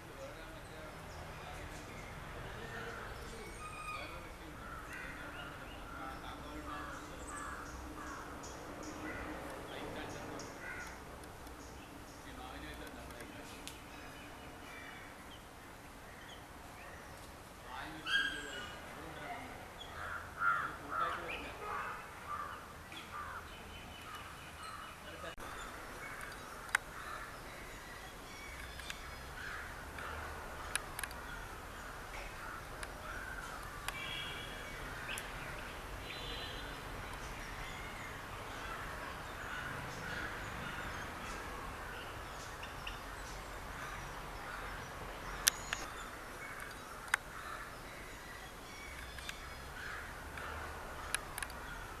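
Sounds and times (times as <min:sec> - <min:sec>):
birds chattering: 0:00.0 - 0:52.0
harsh grating bird calls: 0:02.6 - 0:09.4, 0:17.8 - 0:18.9, 0:19.8 - 0:52.0
sharp clicks: 0:28.5 - 0:29.0, 0:30.7 - 0:31.2, 0:45.4 - 0:45.9, 0:50.3 - 0:51.6.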